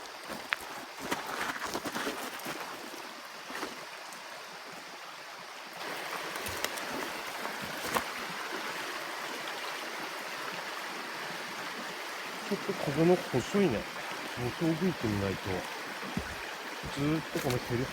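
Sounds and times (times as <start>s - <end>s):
stream water rushing: 2.2s - 17.9s.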